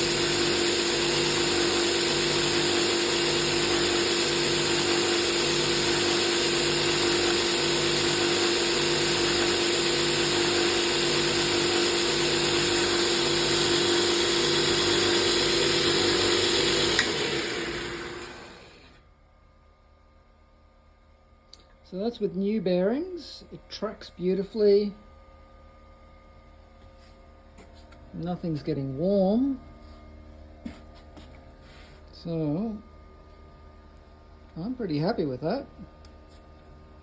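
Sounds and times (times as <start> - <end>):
belt grinder running: 0.0 - 19.0.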